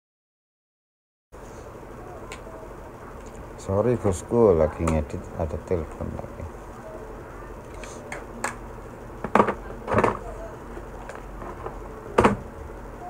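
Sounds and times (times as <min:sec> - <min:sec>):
steady low hum: 0:01.4 - 0:13.0
sharp clicks and knocks: 0:09.2 - 0:10.2, 0:11.0 - 0:12.5.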